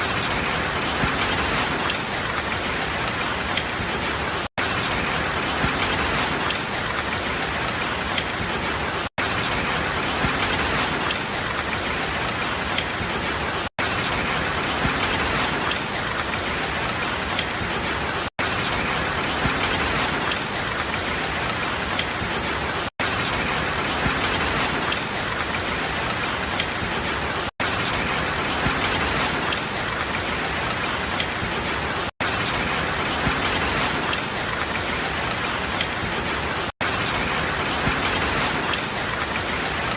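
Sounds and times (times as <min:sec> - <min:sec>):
steady rain: 0:00.0 - 0:39.9.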